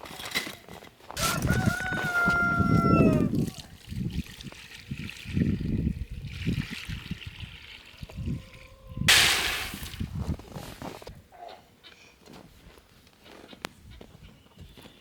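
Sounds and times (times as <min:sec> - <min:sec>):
footsteps crunching through snow: 0:09.6 - 0:11.1.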